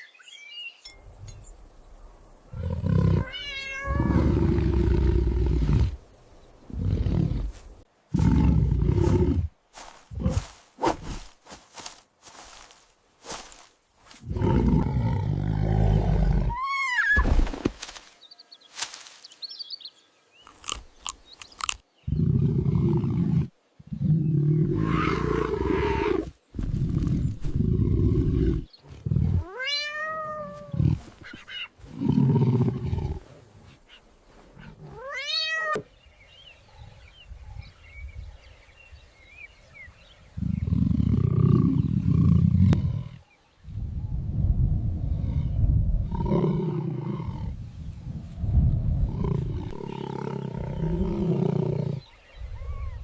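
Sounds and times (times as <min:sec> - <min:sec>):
cat meows: 0:03.2 - 0:04.0, 0:29.4 - 0:30.7, 0:34.9 - 0:35.9
lion-like roars and growls: 0:03.9 - 0:06.0, 0:06.7 - 0:09.5, 0:14.3 - 0:16.6, 0:31.8 - 0:33.4, 0:44.8 - 0:47.6, 0:48.6 - 0:52.1.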